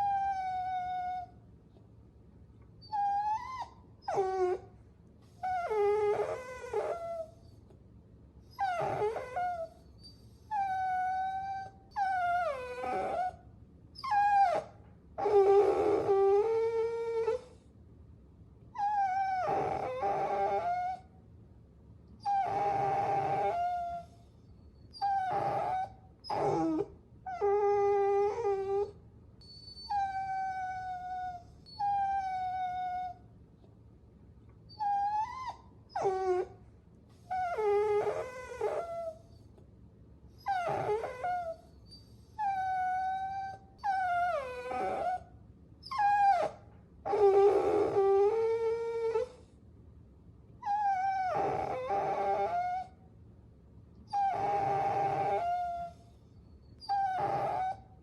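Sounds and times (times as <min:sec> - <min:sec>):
puppies whining: 0:00.0 - 0:01.3, 0:02.8 - 0:04.7, 0:05.3 - 0:07.6, 0:08.5 - 0:13.4, 0:14.0 - 0:17.6, 0:18.8 - 0:21.0, 0:22.2 - 0:33.2, 0:34.7 - 0:36.6, 0:37.2 - 0:39.5, 0:40.4 - 0:49.5, 0:50.6 - 0:53.0, 0:54.1 - 0:58.0.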